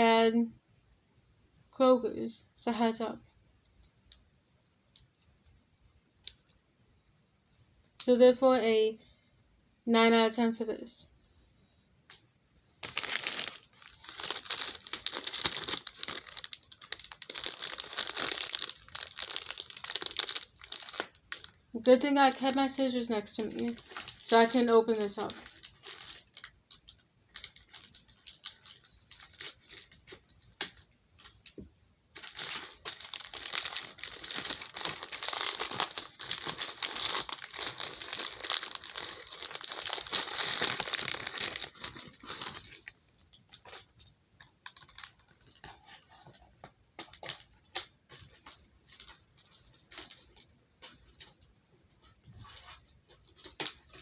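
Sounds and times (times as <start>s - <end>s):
packaging crinkling and tearing: 12.8s - 21.6s, 23.3s - 31.6s, 32.2s - 45.7s, 47.0s - 51.4s.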